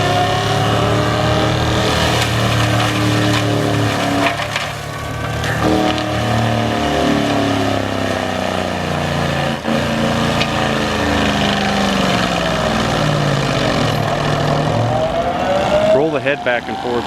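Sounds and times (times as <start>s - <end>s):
diesel engine under load: 0.0s - 17.0s
mulcher grinding wood: 0.0s - 17.0s
sharp crack: 1.4s - 8.0s.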